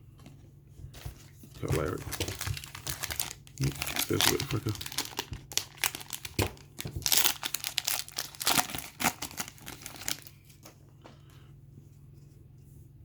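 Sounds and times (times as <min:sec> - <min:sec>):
wrapper tearing and crinkling: 0:01.5 - 0:10.4.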